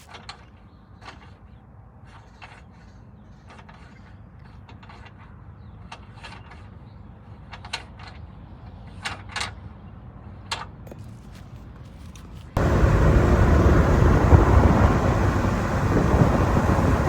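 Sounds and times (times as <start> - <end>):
steady low rumble: 12.6 - 17.0.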